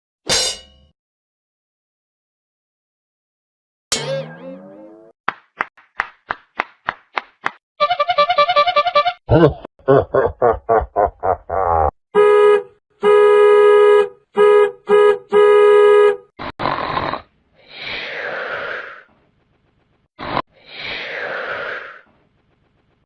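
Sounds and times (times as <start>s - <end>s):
buzzer-like honk: 12.2s - 16.3s
snore-like rasping breath: 16.4s - 19.2s, 20.2s - 22.2s.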